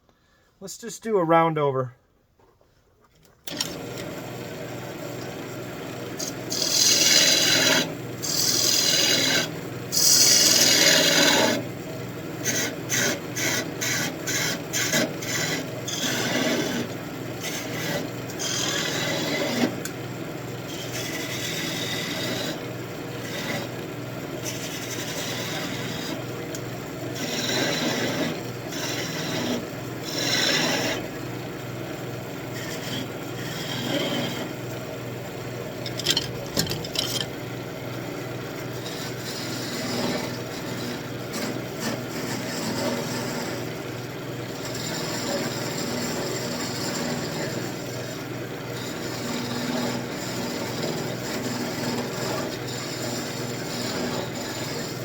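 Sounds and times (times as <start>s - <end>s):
wood lathe humming: 3.5s - 55.0s
turning tool scraping wood: 6.2s - 11.8s, 12.4s - 20.0s, 20.6s - 31.2s, 32.2s - 34.8s, 35.7s - 37.4s, 38.6s - 43.8s, 44.4s - 55.0s.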